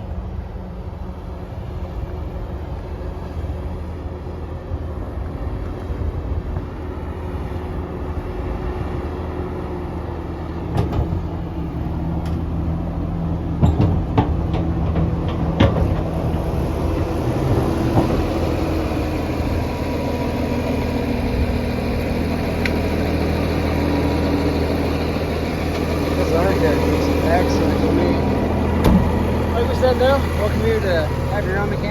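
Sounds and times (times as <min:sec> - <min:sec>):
bulldozer diesel engine running: 0:00.0 - 0:31.9
sharp clanks and knocks: 0:10.7 - 0:11.4, 0:13.6 - 0:16.4, 0:28.8 - 0:29.2.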